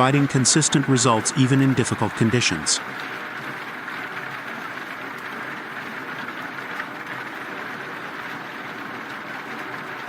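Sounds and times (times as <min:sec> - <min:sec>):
debarker machine running: 0:00.0 - 0:03.7.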